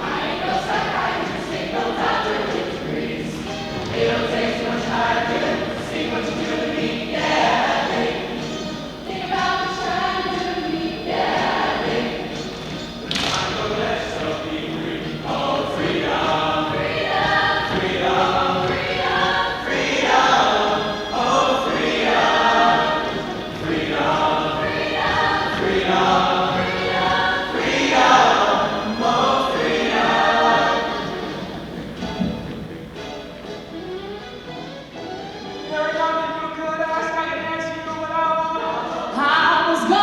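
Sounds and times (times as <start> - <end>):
choir singing: 0.0 - 32.8.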